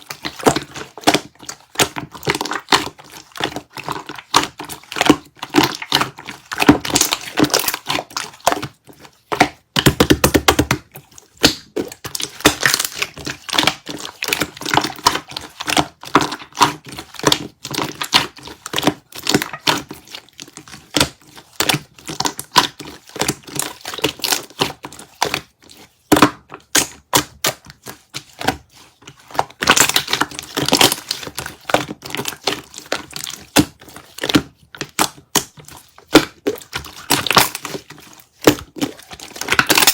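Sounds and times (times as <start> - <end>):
slime crackling and popping: 0.0 - 39.9.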